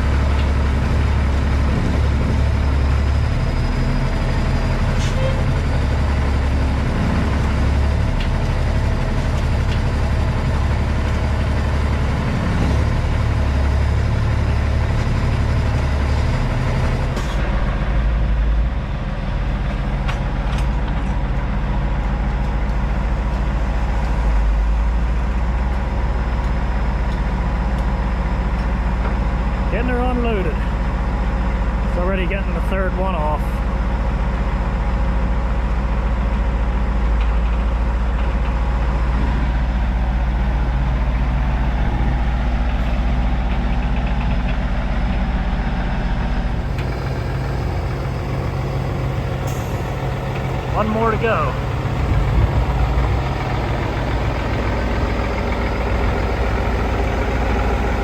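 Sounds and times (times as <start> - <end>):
diesel engine low rumble: 0.0 - 58.0
hiss above engine rumble: 46.5 - 58.0.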